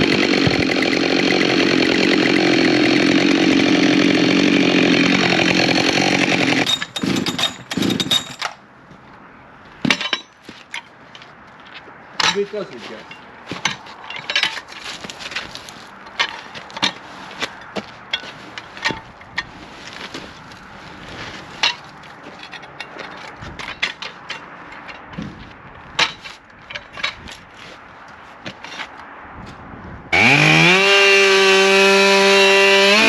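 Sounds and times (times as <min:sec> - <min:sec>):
hard objects knocking and clunking: 0:09.8 - 0:11.4, 0:12.2 - 0:19.5, 0:21.6 - 0:27.4.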